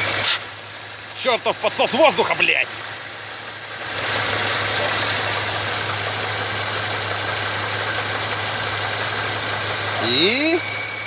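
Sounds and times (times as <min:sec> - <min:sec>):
car engine idling: 0:00.0 - 0:11.0
whistling air hiss: 0:10.0 - 0:11.0.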